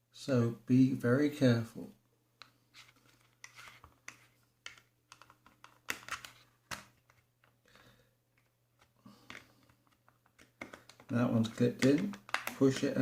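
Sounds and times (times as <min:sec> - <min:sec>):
plastic parts clicking: 0:03.4 - 0:07.6, 0:08.4 - 0:12.9.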